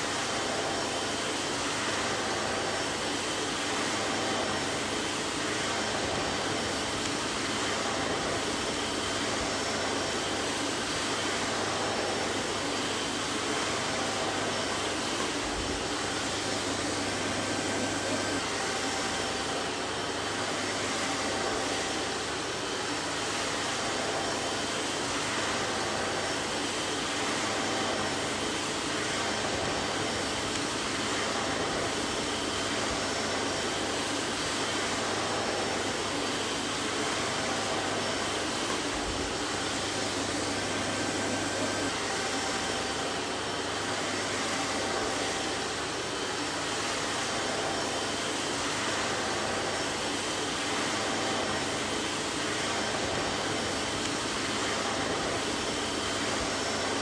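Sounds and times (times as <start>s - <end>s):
vacuum cleaner running: 0.0s - 57.0s.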